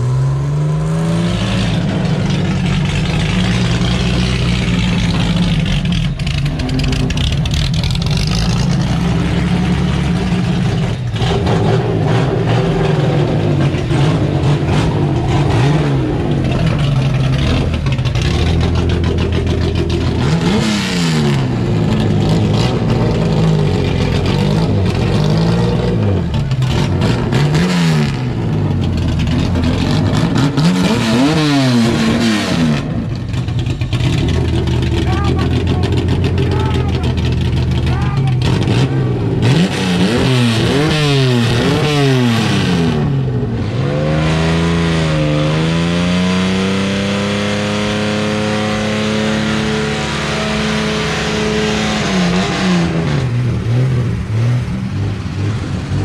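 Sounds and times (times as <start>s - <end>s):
car engine idling and revving: 0.0s - 56.0s.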